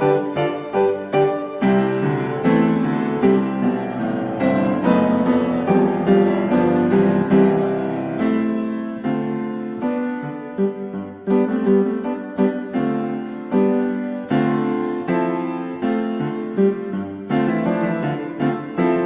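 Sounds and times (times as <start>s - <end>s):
piano music: 0.0s - 19.0s.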